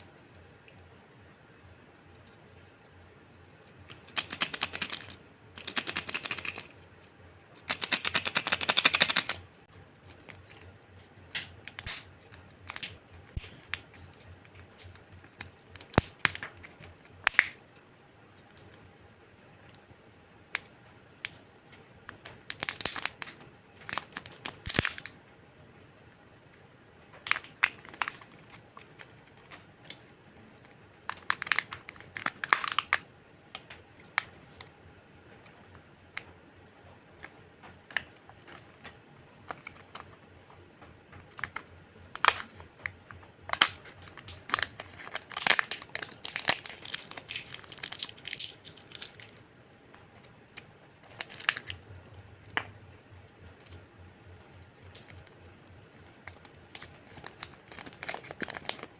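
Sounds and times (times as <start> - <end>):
plastic egg halves clicking: 7.6 - 9.5
plastic foil wrapper crinkling: 22.1 - 25.1, 31.0 - 33.0, 41.2 - 52.6, 53.4 - 58.9.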